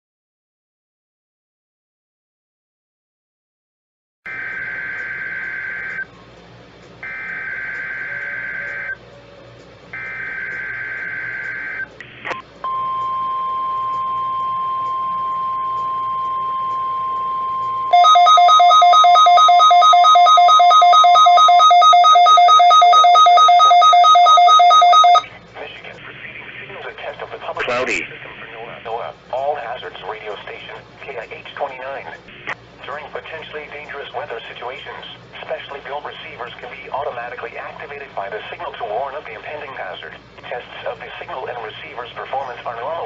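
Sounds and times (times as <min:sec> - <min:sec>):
pulsing electronic alarm beep: 0:04.3 - 0:06.1, 0:07.0 - 0:09.0, 0:10.0 - 0:11.9, 0:12.7 - 0:25.3
steady warning alarm tone: 0:04.3 - 0:06.1, 0:07.0 - 0:09.0, 0:09.9 - 0:11.9, 0:12.6 - 0:25.3.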